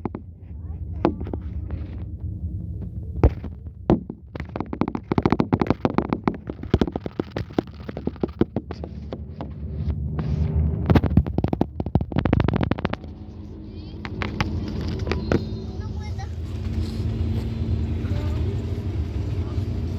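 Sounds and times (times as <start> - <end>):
rattling knocks and clicks: 0.0 - 13.2
diesel engine rumbling: 0.0 - 19.9.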